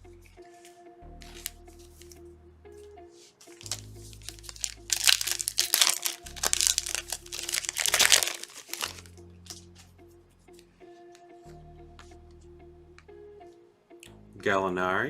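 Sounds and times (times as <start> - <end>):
background music with bass line: 0.0 - 15.0
foil wrapper crinkling: 1.2 - 2.1, 3.5 - 9.6.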